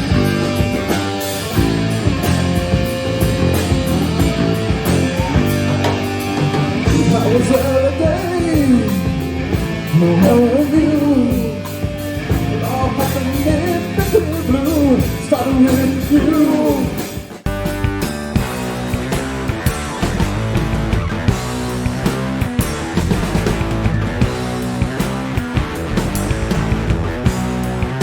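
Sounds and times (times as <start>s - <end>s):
bass guitar: 0.0s - 28.0s
drums: 0.0s - 28.0s
electric guitars: 0.0s - 28.0s
lead voice singing: 0.1s - 17.4s.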